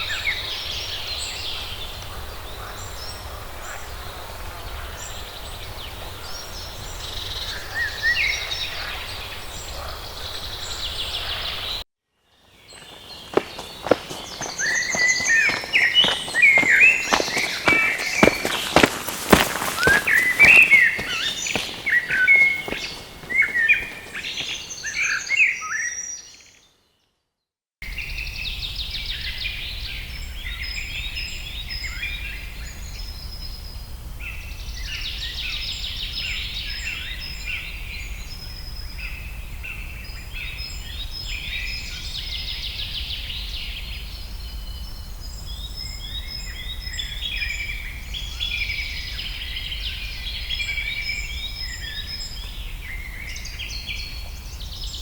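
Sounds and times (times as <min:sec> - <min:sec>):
dense bird chorus: 0:00.0 - 0:26.7, 0:27.9 - 0:55.0
birds chirping and calling: 0:12.6 - 0:26.5.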